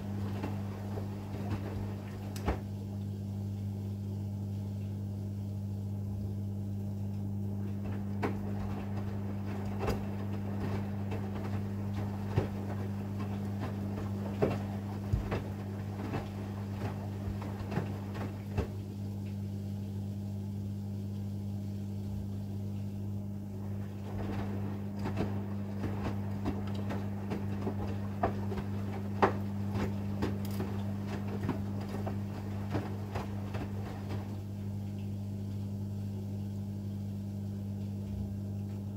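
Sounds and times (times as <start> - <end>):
washing machine drum knocks and clicks: 0.0 - 2.9, 7.1 - 19.3, 23.6 - 35.6
washing machine motor hum: 0.0 - 38.9.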